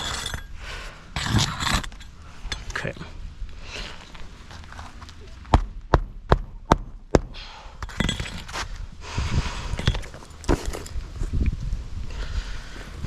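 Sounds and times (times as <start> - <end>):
shingle scraping and rustling: 0.0 - 5.8, 7.8 - 8.8, 9.6 - 11.4.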